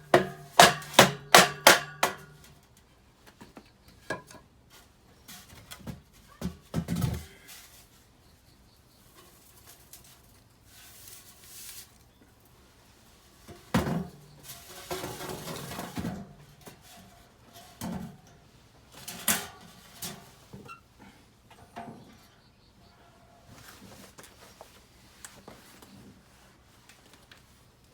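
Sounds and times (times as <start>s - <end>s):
objects knocking and scraping: 0.0s - 2.6s, 3.3s - 7.6s, 13.4s - 20.8s.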